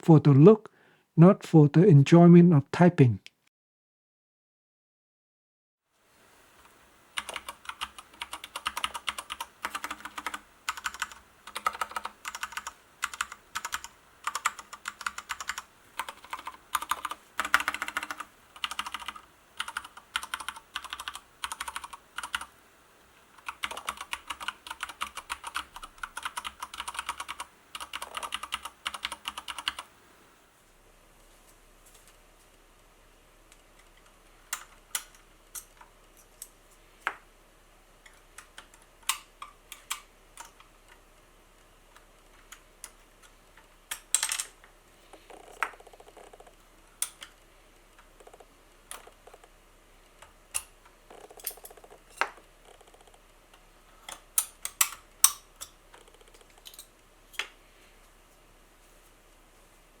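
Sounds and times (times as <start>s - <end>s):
mechanical keyboard typing: 7.2s - 22.5s, 23.4s - 29.9s.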